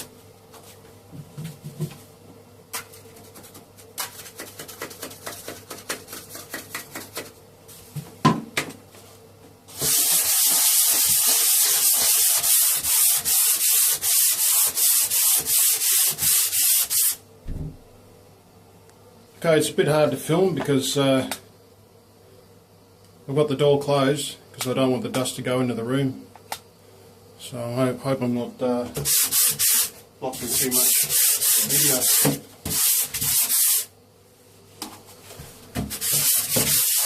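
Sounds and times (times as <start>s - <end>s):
hand sanding plaster: 3.2s - 7.3s, 9.7s - 17.2s, 29.0s - 33.9s, 35.8s - 37.0s.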